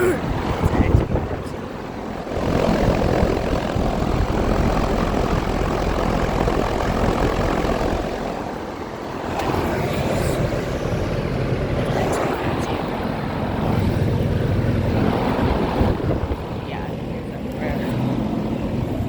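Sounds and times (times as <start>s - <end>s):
heat pump fan whoosh: 0.0s - 19.0s.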